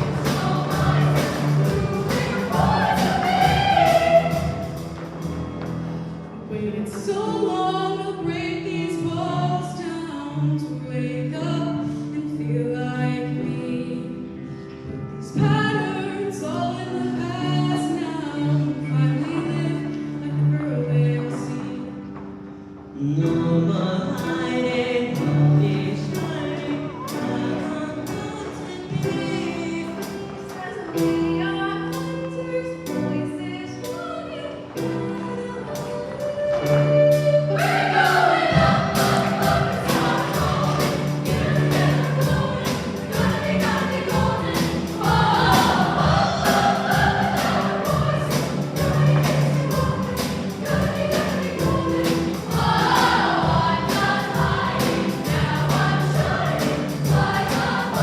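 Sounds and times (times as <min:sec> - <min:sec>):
choir singing with accompaniment: 0:00.0 - 0:06.7, 0:24.2 - 0:31.1, 0:33.8 - 0:58.0.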